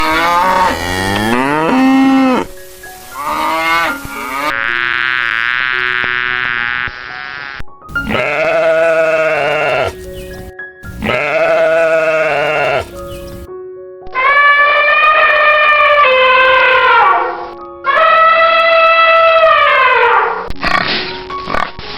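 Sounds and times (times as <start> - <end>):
faint music tones: 0.0 - 4.8, 7.8 - 13.5
sheep bleating: 7.9 - 13.5.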